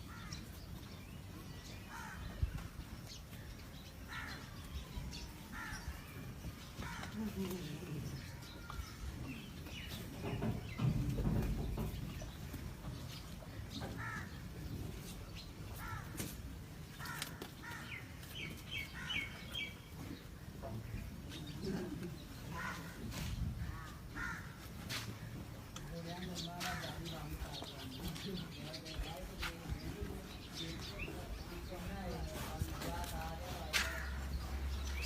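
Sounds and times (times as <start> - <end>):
birds cawing: 1.8 - 2.4, 4.0 - 7.3, 13.8 - 14.5, 15.8 - 16.2, 17.0 - 19.8, 22.5 - 25.0, 33.7 - 35.0.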